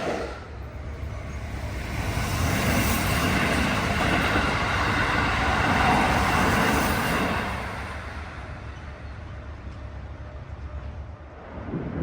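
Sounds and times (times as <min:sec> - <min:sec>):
electric train rumble: 0:00.0 - 0:12.0
wind on microphone: 0:11.3 - 0:12.0.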